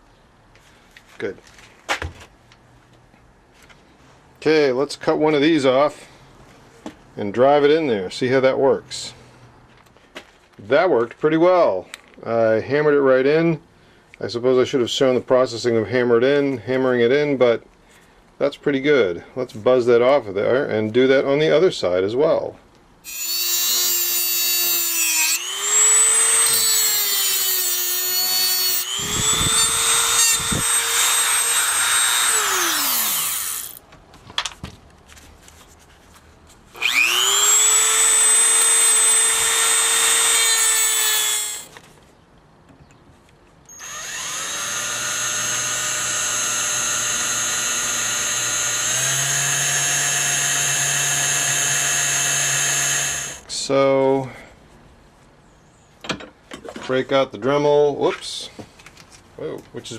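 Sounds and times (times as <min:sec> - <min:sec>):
rotary tool whining: 0:23.1 - 0:33.8, 0:36.8 - 0:41.7, 0:43.7 - 0:53.4.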